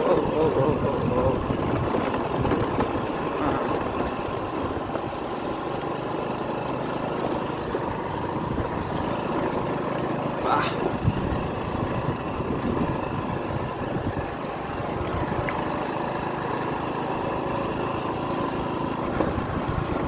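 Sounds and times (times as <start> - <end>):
motor scooter engine running: 0.0 - 20.0
wind rushing over microphone: 10.8 - 15.5, 19.2 - 20.0.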